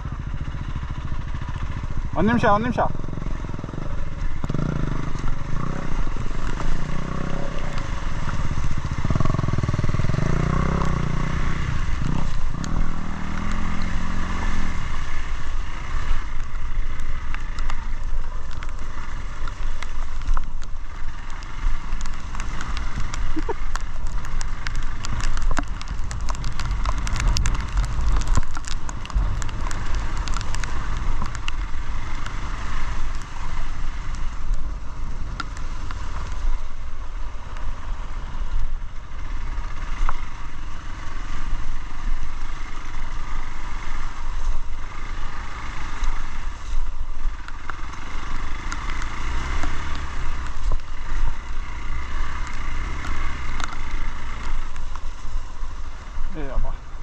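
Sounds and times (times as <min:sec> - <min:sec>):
motorcycle engine: 0:00.0 - 0:57.0
sharp clicks and knocks: 0:19.4 - 0:31.6
wind noise on microphone: 0:24.9 - 0:31.6.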